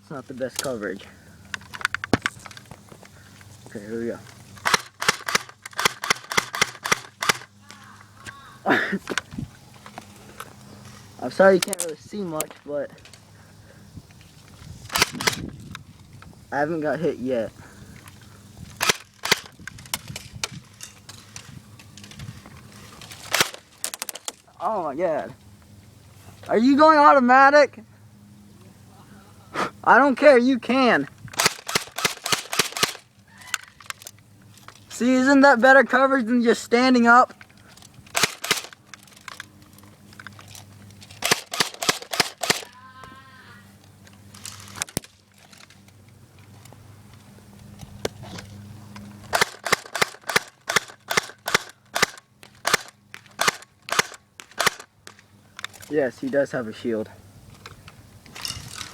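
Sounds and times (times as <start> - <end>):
airsoft guns firing: 4.6 - 7.5, 14.9 - 15.4, 18.8 - 19.5, 23.3 - 24.2, 31.4 - 33.1, 38.1 - 38.8, 41.2 - 42.7, 49.3 - 54.9.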